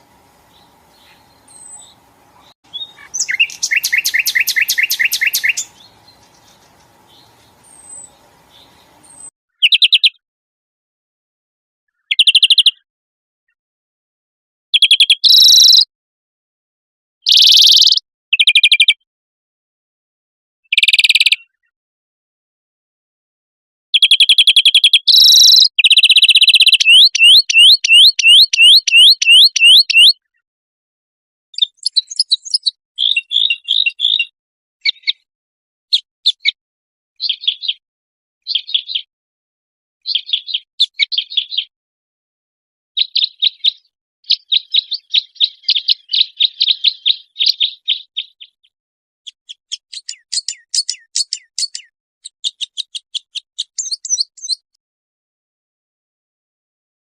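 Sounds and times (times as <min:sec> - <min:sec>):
bird trills and chattering: 0:00.4 - 0:10.2, 0:14.8 - 0:15.8, 0:24.0 - 0:30.2, 0:31.6 - 0:34.3, 0:49.3 - 0:54.6
rising whistled bird notes: 0:02.7 - 0:05.9, 0:26.4 - 0:30.2.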